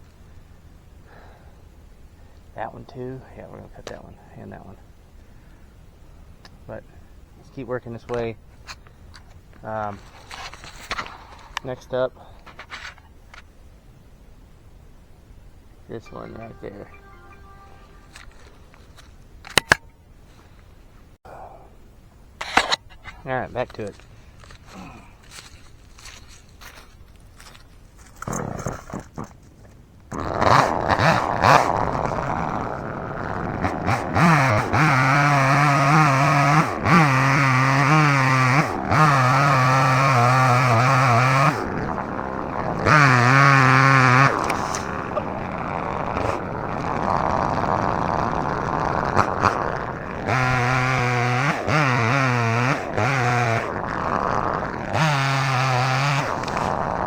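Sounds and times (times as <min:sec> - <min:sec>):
chainsaw cutting tree: 0:16.0 - 0:19.9, 0:30.1 - 0:57.0.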